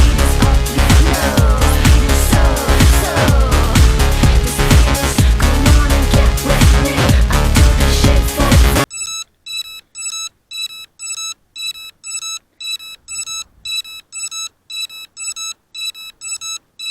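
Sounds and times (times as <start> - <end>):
electronic dance music: 0.0 - 8.9.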